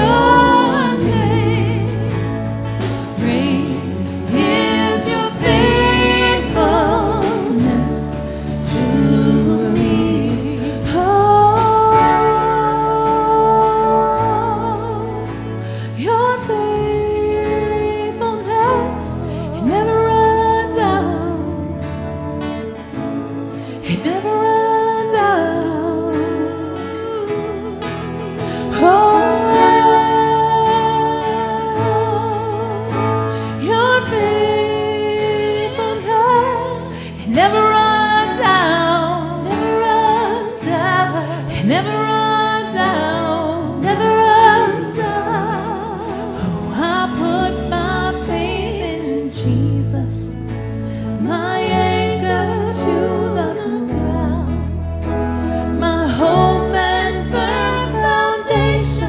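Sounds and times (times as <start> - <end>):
person singing long notes: 0.0 - 2.4, 3.0 - 15.2, 28.7 - 33.0
worship band playing: 0.0 - 50.3.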